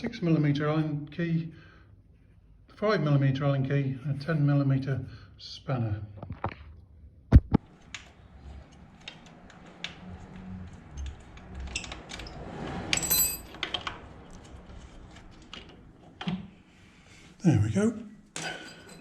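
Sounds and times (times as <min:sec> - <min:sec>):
metal hand tools clinking: 0:11.7 - 0:13.6, 0:18.4 - 0:19.0
ringing metallic clink: 0:13.0 - 0:13.5.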